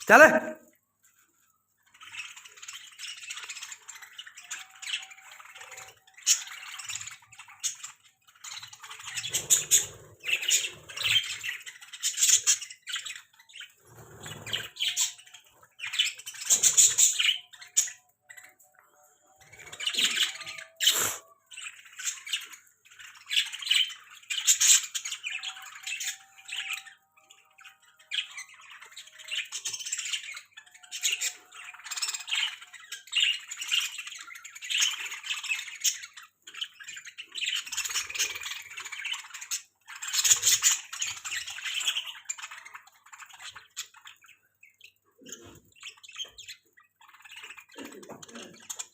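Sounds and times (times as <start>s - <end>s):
budgerigars chattering and squawking: 0.0s - 0.6s, 1.8s - 48.9s.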